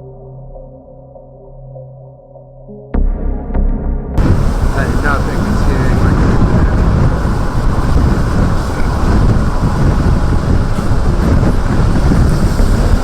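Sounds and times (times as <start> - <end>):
wind buffeting microphone: 4.2 - 13.0.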